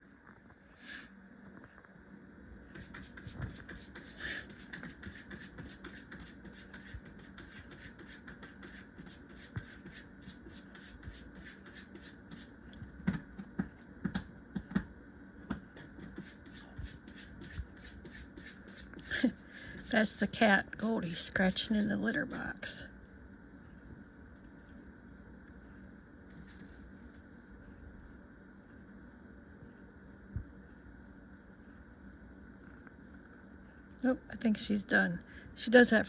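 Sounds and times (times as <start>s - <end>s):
cat scratching in litter box: 2.7s - 13.6s, 15.7s - 20.1s.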